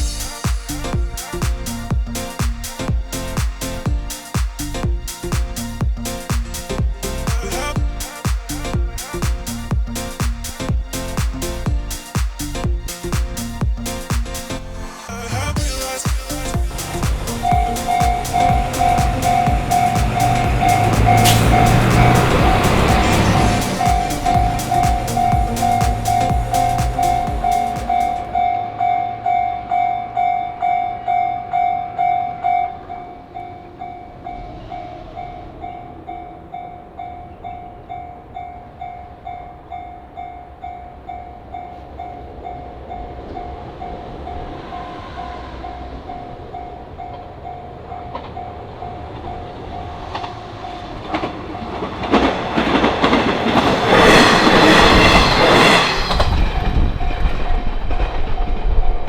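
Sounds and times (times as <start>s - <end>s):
diesel train passing rumble: 0.0s - 59.0s
level-crossing electronic bell: 15.6s - 34.5s.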